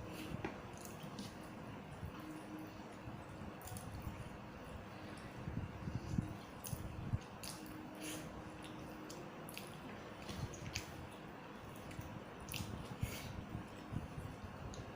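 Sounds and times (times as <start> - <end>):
person chewing: 6.0 - 13.3.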